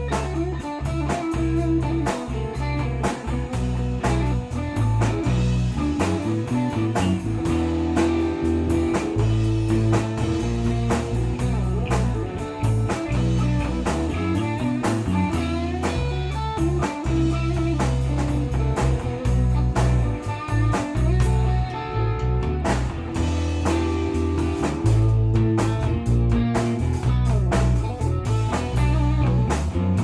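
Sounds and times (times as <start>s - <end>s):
bass guitar line: 0.0s - 30.0s
drum kit beat: 0.0s - 30.0s
electric guitars: 0.0s - 30.0s.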